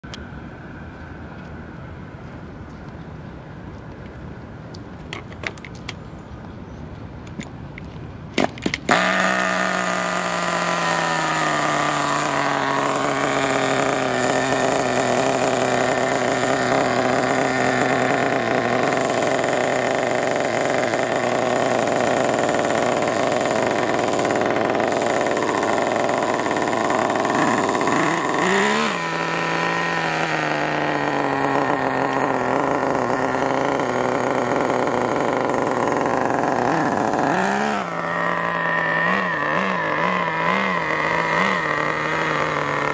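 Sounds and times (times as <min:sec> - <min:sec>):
small engine starting pops: 0:05.0 - 0:06.1, 0:07.3 - 0:42.9
small buzzy engine running: 0:08.4 - 0:42.9.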